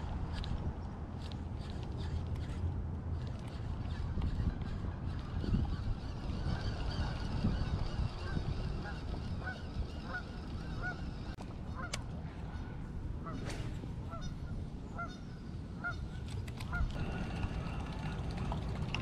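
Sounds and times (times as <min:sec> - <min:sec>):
wind on microphone: 0:00.0 - 0:19.0
geese honking: 0:06.4 - 0:11.9, 0:14.1 - 0:16.1.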